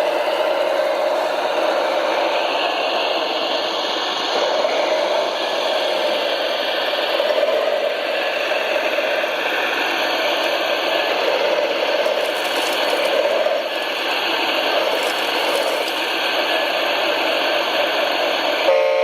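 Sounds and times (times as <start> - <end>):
electric motors whirring: 9.7 - 18.3
gear rattle: 12.0 - 16.2.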